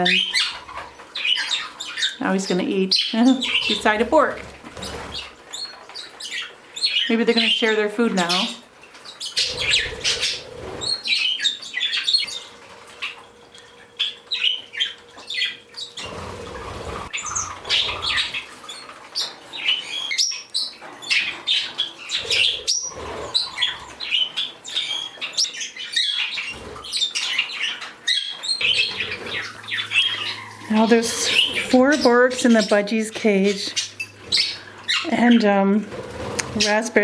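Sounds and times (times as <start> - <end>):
parakeets chirping and chattering: 0.0 - 37.0
parakeet squawks: 9.2 - 13.3, 13.9 - 32.8, 33.6 - 35.6.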